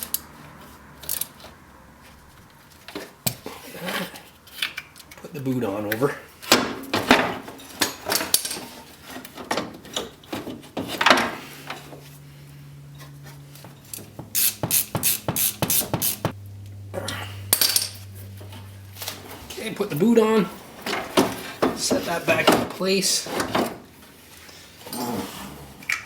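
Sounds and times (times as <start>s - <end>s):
tools handled: 6.4s - 11.8s.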